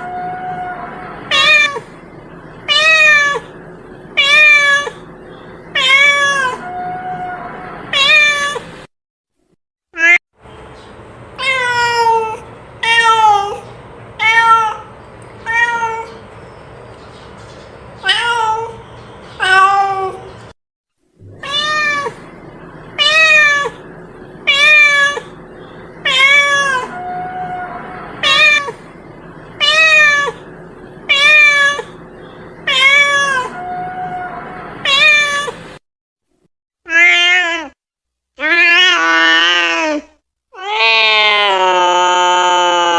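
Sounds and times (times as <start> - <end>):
cat meowing: 0.0 - 1.9, 2.7 - 3.6, 4.2 - 5.0, 5.8 - 8.6, 14.2 - 16.2, 18.0 - 18.8, 21.3 - 22.2, 23.0 - 23.8, 24.5 - 25.4, 26.0 - 28.8, 29.6 - 30.5, 31.1 - 32.0, 32.6 - 35.6, 36.9 - 37.8, 38.4 - 42.9.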